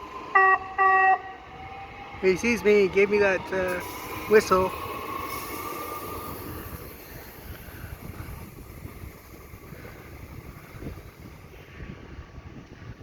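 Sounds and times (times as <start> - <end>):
train high hum: 0.0 - 13.0
wind on microphone: 3.4 - 13.0.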